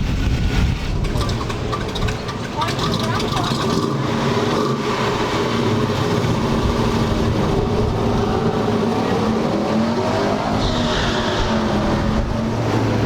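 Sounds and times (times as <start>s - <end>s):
car engine idling: 1.0s - 9.4s.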